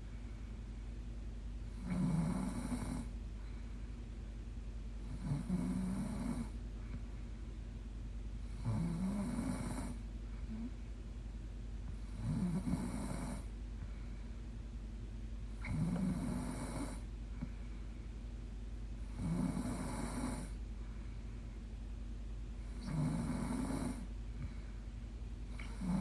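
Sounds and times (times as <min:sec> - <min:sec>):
woman snoring: 0:01.8 - 0:03.1, 0:05.1 - 0:06.6, 0:08.6 - 0:10.8, 0:12.1 - 0:13.5, 0:15.6 - 0:17.1, 0:19.1 - 0:20.6, 0:22.7 - 0:24.1, 0:25.6 - 0:26.0.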